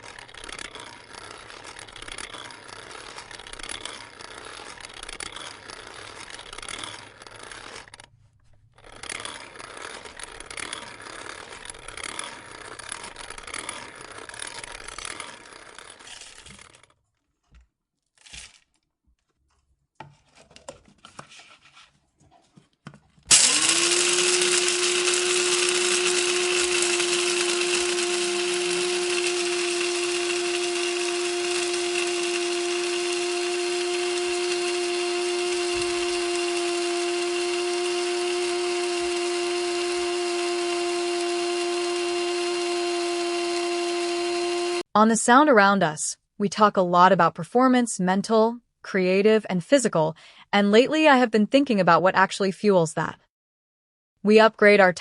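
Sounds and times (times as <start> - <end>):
coffee grinder motor humming: 0.0 - 16.9, 23.3 - 44.9.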